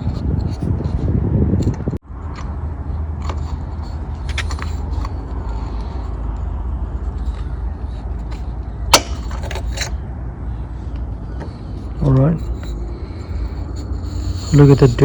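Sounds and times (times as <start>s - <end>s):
small metal parts clicking: 1.6s - 7.6s, 11.8s - 15.0s.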